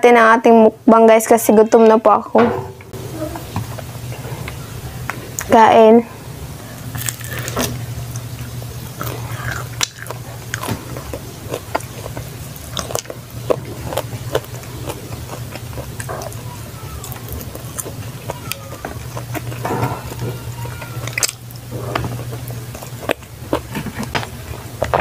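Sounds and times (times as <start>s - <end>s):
steady low hum: 0.0s - 25.0s
person chewing food: 6.8s - 25.0s.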